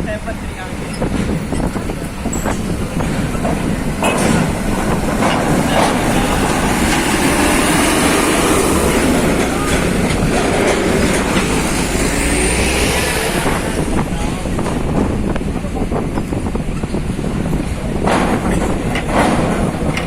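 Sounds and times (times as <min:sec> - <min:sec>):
knocks and clanks from vehicle: 0:00.6 - 0:12.1, 0:12.8 - 0:20.0
diesel truck driving past: 0:03.0 - 0:14.6.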